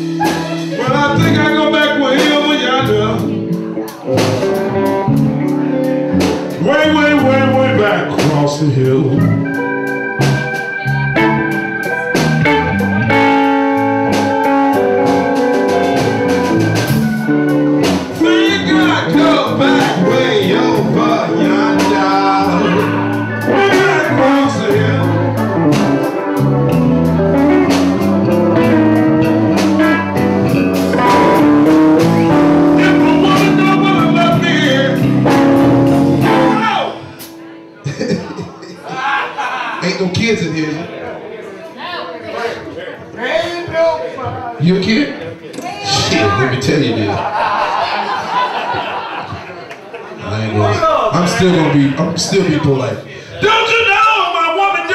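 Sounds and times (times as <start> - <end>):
guitar bent notes: 0.0 - 38.9, 45.5 - 46.5
live blues band: 0.0 - 41.0, 44.7 - 54.9.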